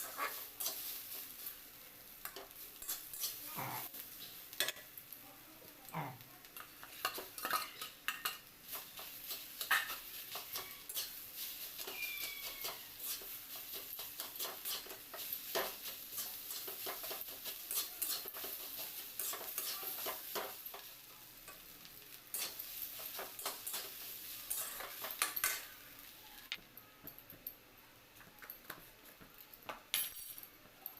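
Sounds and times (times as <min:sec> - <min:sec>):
food sizzling: 0:00.0 - 0:27.0
spatula scraping metal pan: 0:08.9 - 0:20.6.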